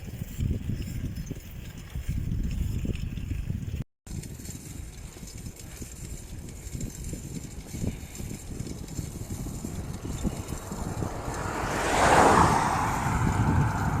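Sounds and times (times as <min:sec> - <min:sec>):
wind rumbling on microphone: 0:00.0 - 0:14.0
vehicle driving past: 0:08.8 - 0:14.0.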